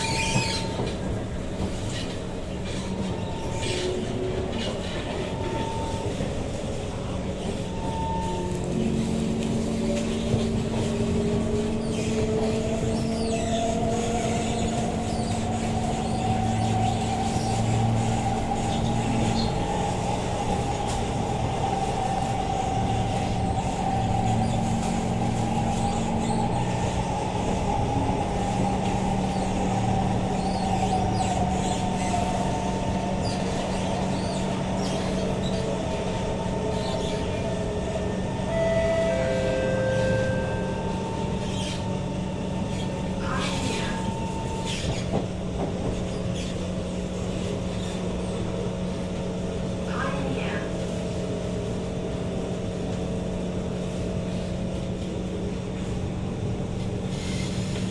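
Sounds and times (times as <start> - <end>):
train wheel-on-rail noise: 0.0 - 57.9
train motor whine: 7.4 - 46.2.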